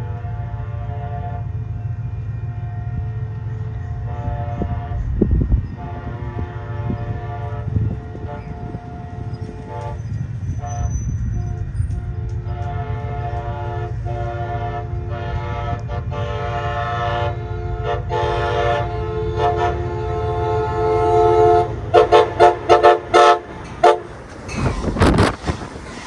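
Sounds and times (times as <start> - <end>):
train air horn blasts: 0.0 - 1.6, 2.5 - 25.4
low rumble of train: 0.0 - 26.0
rushing noise: 19.8 - 26.0.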